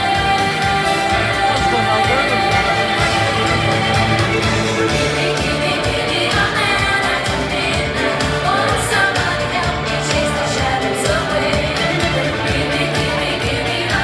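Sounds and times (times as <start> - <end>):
pop song with singing: 0.0 - 14.0.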